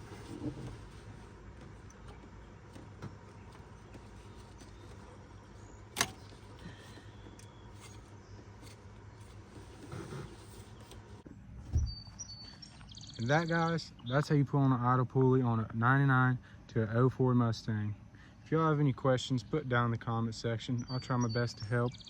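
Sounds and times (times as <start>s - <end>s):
steady low hum: 0.0s - 22.0s
low thump: 11.6s - 12.0s.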